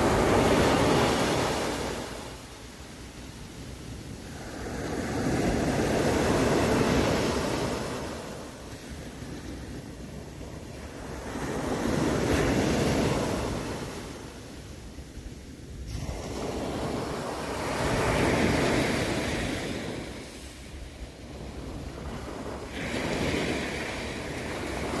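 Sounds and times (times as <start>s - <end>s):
ocean waves breaking on beach: 0.0s - 25.0s.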